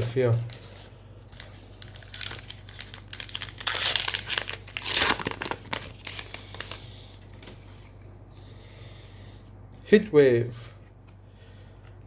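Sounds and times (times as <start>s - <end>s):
foil wrapper tearing and crinkling: 1.4s - 7.5s.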